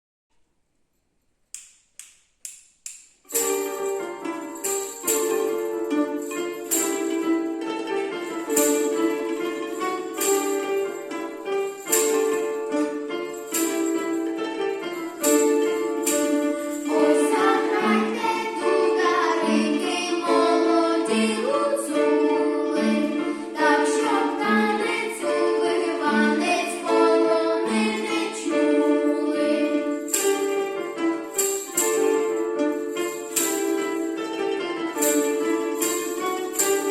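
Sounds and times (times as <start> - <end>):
plucked strings accompaniment: 3.3 - 36.9
group singing: 16.9 - 30.0.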